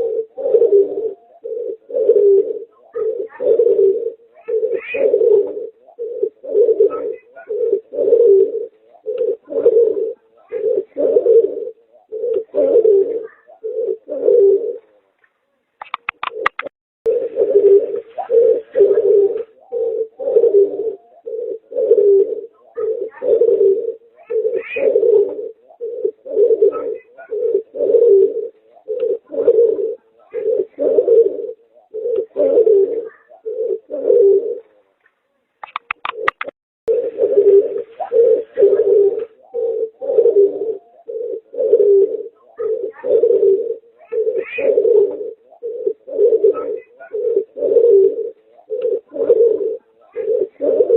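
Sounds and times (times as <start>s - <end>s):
dove cooing: 0.0s - 15.1s, 15.9s - 34.9s, 35.6s - 50.9s.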